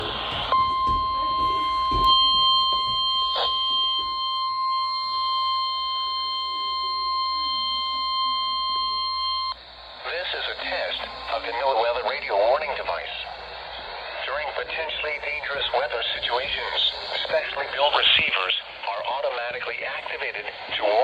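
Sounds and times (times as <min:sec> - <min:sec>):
steady warning alarm tone: 0:00.0 - 0:18.2.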